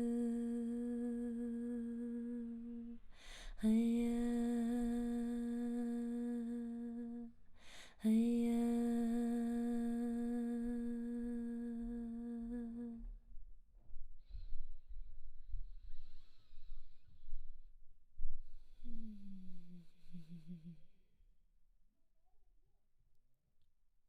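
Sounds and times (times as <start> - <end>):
woman humming long notes: 0.0 - 3.0, 3.6 - 7.3, 8.0 - 13.1, 18.8 - 20.9.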